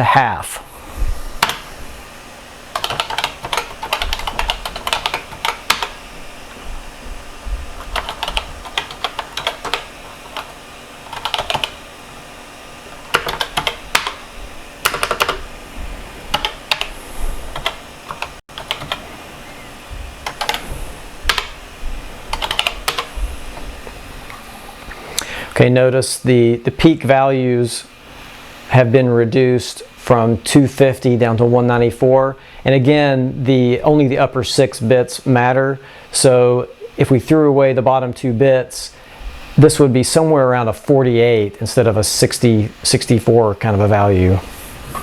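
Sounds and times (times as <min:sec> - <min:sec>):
computer keyboard typing: 0:01.4 - 0:01.7, 0:02.7 - 0:06.0, 0:07.8 - 0:11.8, 0:13.0 - 0:14.2, 0:14.8 - 0:15.5, 0:16.3 - 0:19.1, 0:20.2 - 0:21.6, 0:22.3 - 0:23.2.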